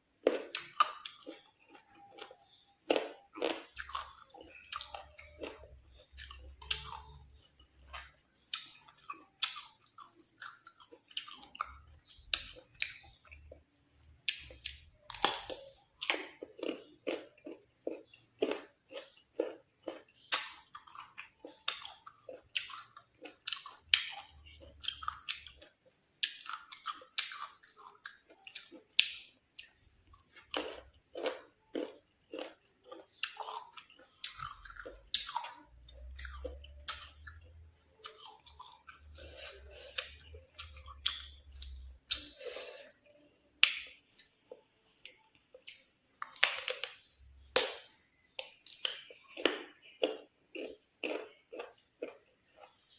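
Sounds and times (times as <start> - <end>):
chewing crisp mango: 0.2 - 13.6, 14.2 - 43.0, 48.4 - 52.9.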